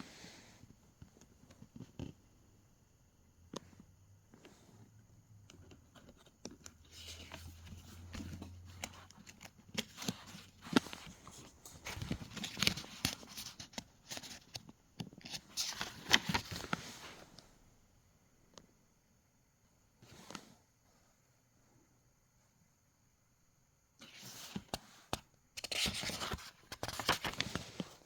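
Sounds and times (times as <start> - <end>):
paper pages rustling and clicking: 5.6 - 17.2, 24.0 - 28.0.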